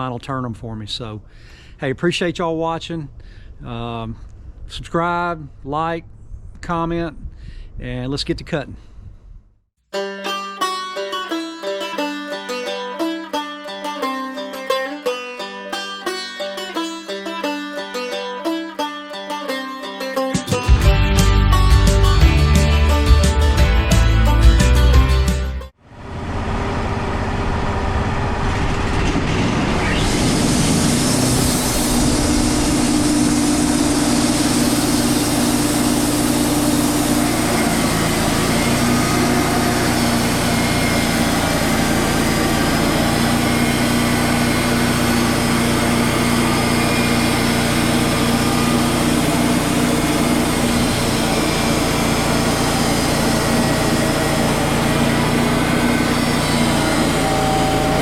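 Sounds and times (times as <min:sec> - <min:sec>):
band sawmill cutting log: 0:26.0 - 0:58.0.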